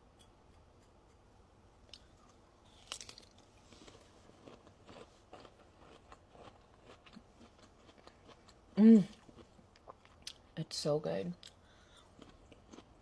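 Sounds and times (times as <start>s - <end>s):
chewing firm fruit: 1.9s - 10.6s, 11.4s - 13.0s
person biting crisp fruit: 2.7s - 5.5s.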